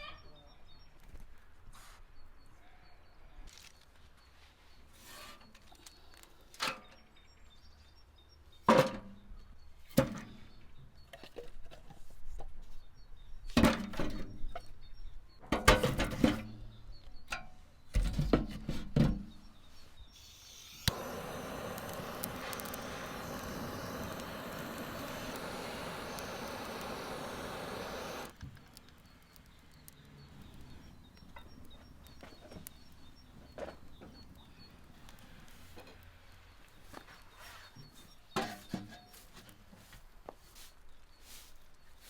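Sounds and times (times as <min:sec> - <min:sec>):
steady hiss: 0:20.2 - 0:28.4.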